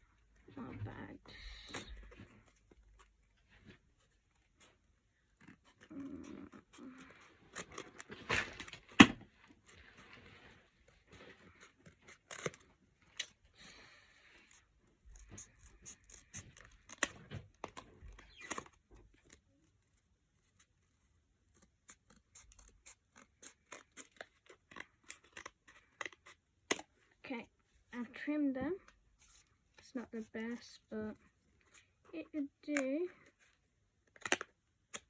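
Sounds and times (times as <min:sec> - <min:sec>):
scissors cutting cardboard: 0:04.0 - 0:09.8, 0:11.1 - 0:13.4, 0:14.4 - 0:27.0, 0:32.6 - 0:35.0.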